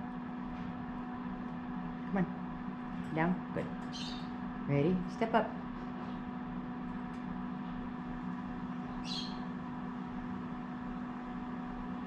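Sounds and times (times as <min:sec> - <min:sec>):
steady background hum: 0:00.0 - 0:12.0
lovebird chirping: 0:09.0 - 0:09.4.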